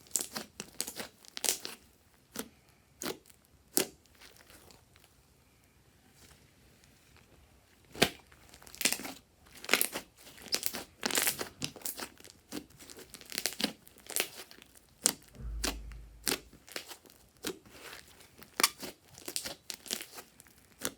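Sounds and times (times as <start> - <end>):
low thump: 15.4 - 16.6.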